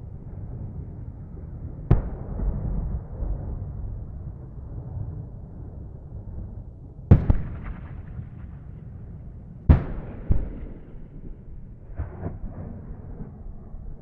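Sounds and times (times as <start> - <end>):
distant explosions: 0.0 - 5.4, 7.1 - 14.0
low background rumble: 0.0 - 14.0.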